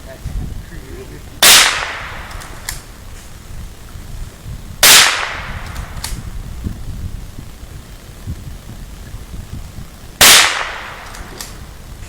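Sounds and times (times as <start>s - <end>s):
rifle shots: 1.4s - 2.9s, 4.8s - 6.2s, 10.2s - 11.6s.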